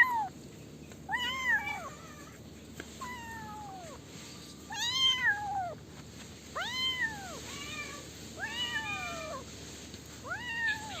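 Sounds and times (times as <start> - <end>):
kittens meowing: 1.1 - 2.4, 10.3 - 11.0.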